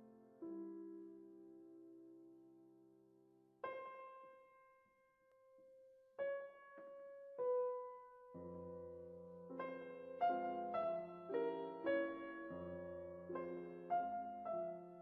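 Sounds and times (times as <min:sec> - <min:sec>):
piano music: 0:05.6 - 0:15.0.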